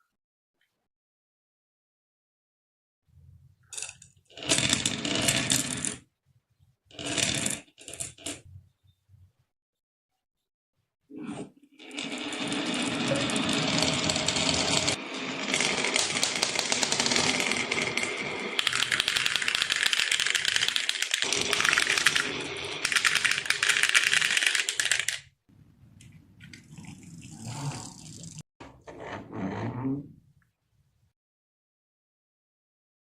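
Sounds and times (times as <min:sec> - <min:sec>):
marbles rattling down wooden run: 0:11.9 - 0:25.3.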